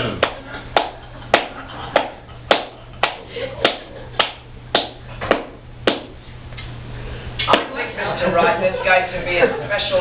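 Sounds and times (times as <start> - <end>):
slow hand claps: 0.2 - 6.2.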